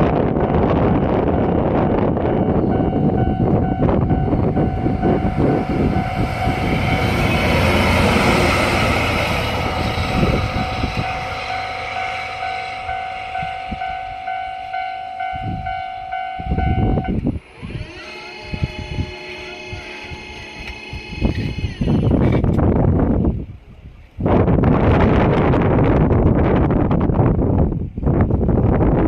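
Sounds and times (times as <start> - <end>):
locomotive rumble: 0.0 - 29.0
crossing warning alarm beeping: 1.0 - 22.1.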